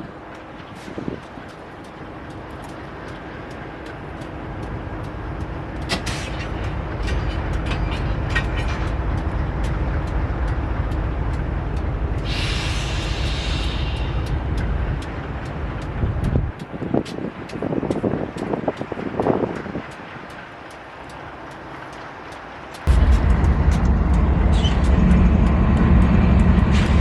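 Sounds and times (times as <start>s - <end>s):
train rumbling: 0.0s - 27.0s
hiss of air: 12.2s - 14.5s.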